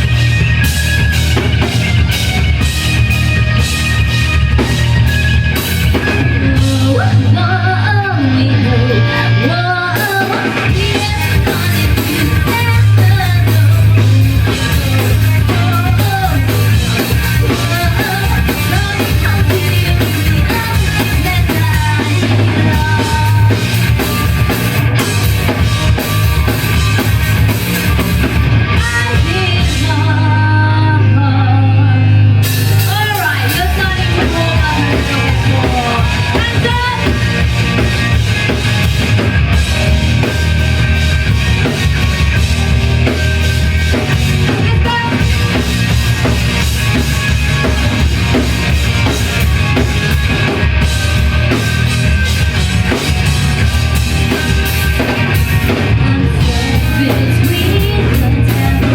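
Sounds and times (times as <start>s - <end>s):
drum kit: 0.0s - 31.2s, 32.1s - 58.9s
rock band playing loud: 0.0s - 58.9s
person singing: 5.9s - 23.8s, 28.7s - 37.8s, 44.4s - 45.6s, 55.7s - 58.9s.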